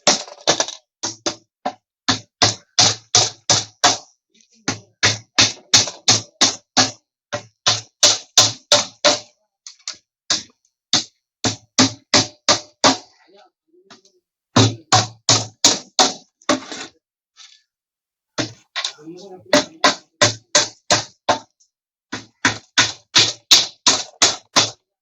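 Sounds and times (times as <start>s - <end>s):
hammer driving nails into plywood: 22.1s - 24.8s.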